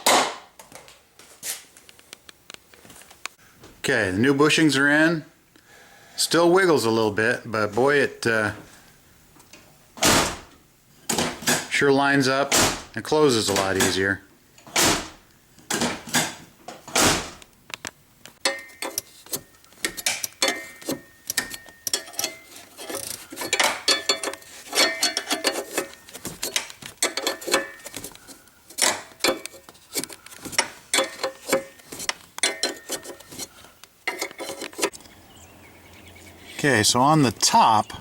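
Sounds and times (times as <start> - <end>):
metal tools clinking on hinge: 18.4 - 34.9.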